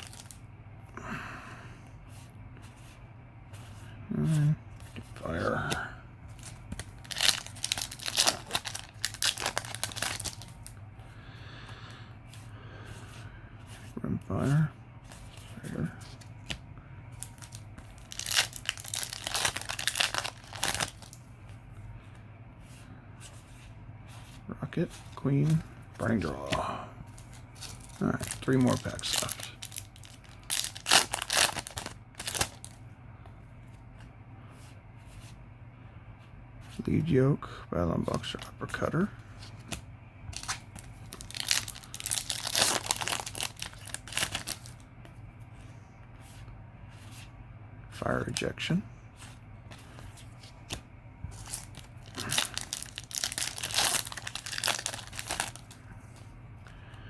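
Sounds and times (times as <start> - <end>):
foil wrapper crinkling and tearing: 0.0 - 0.4, 6.7 - 10.7, 17.2 - 21.2, 27.2 - 32.8, 40.4 - 44.8, 51.4 - 55.8.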